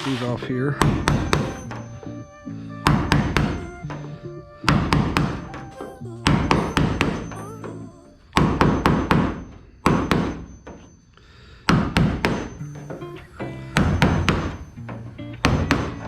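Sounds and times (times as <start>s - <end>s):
background music: 0.0s - 8.4s, 12.5s - 16.0s.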